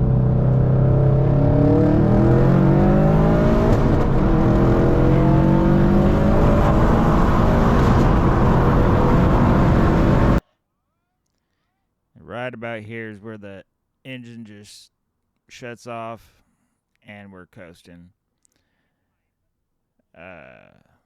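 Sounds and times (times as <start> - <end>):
car engine revving: 0.0 - 10.4.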